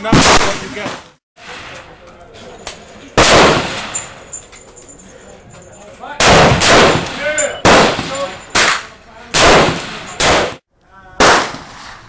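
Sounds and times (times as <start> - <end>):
rifle shots echoing: 3.2 - 4.2, 6.2 - 10.6.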